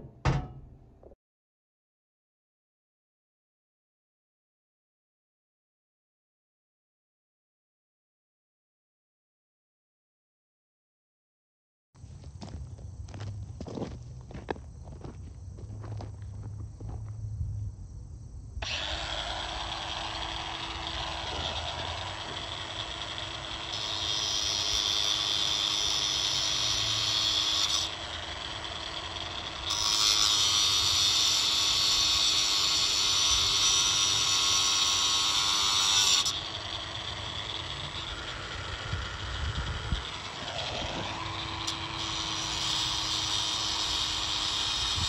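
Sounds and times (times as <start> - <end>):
angle grinder motor whine: 18.6 - 45.0
grinder screeching on metal: 18.6 - 45.0.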